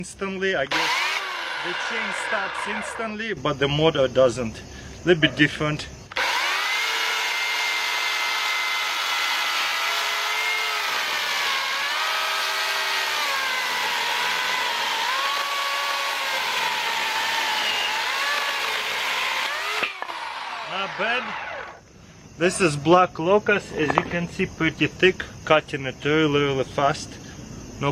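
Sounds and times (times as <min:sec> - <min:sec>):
chainsaw chain rasping in wood: 0:00.7 - 0:03.2, 0:06.1 - 0:21.8
chainsaw motor whine: 0:00.7 - 0:03.4, 0:06.1 - 0:21.8.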